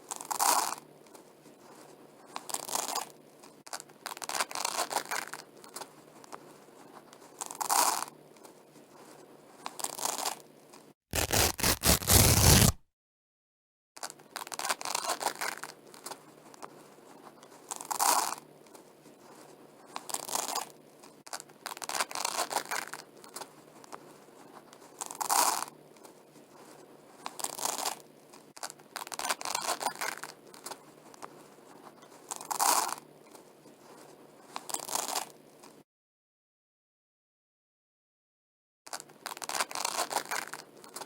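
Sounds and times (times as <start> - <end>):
faint velcro crackles: 9.6 - 12.8, 14.0 - 35.8, 38.9 - 41.0
velcro strips ripping apart: 11.1 - 12.8.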